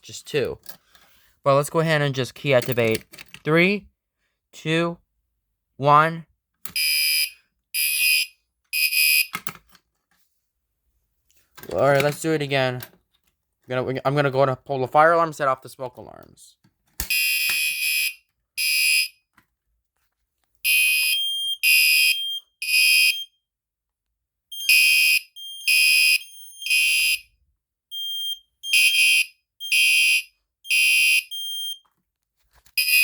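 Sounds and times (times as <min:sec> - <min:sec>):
fire alarm horn blasts: 0:06.8 - 0:09.3, 0:17.1 - 0:19.2, 0:20.7 - 0:23.3, 0:24.5 - 0:27.3, 0:27.9 - 0:31.8, 0:32.8 - 0:33.0
smoke alarms beeping: 0:06.8 - 0:09.3, 0:20.7 - 0:23.4, 0:24.5 - 0:27.2, 0:27.9 - 0:31.8.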